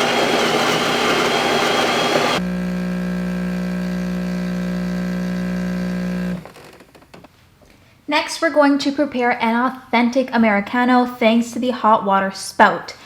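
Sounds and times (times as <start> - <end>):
grinder grinding coffee beans: 0.0 - 6.5
mechanical buzzing hum: 0.0 - 6.6.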